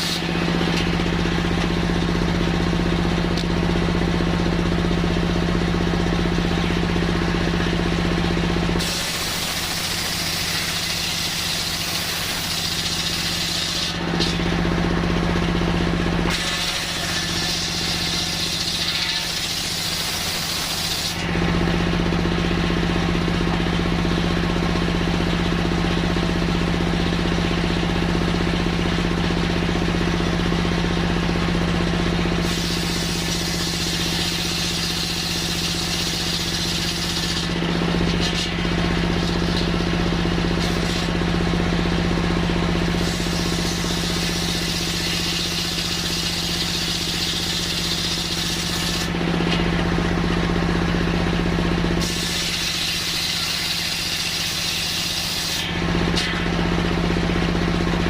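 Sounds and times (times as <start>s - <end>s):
saw blade cutting wood hiss: 0.0s - 0.3s, 8.8s - 14.4s, 16.3s - 21.2s, 32.4s - 37.5s, 40.6s - 41.1s, 42.9s - 49.1s, 52.0s - 56.3s
circular saw machine hum: 0.0s - 58.0s.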